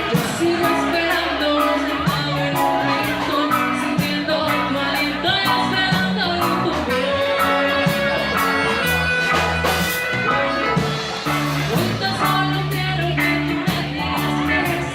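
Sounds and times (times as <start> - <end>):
person singing: 0.0 - 9.3, 11.2 - 14.9
bass guitar: 0.0 - 14.9
drums: 0.0 - 14.9
electric guitar: 0.0 - 14.9.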